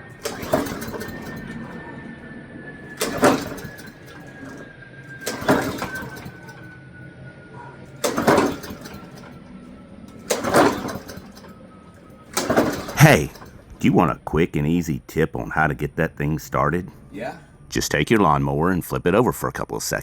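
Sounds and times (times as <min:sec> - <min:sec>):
lawn mower recoil starter pulled: 0:00.0 - 0:02.1, 0:02.8 - 0:06.7, 0:07.9 - 0:14.3.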